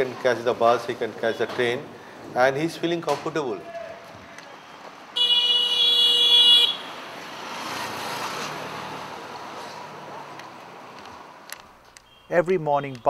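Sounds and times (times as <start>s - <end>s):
street traffic: 0.0s - 13.0s
vehicle horn blowing: 5.2s - 7.0s, 12.1s - 12.4s
vehicle passing: 6.2s - 11.9s.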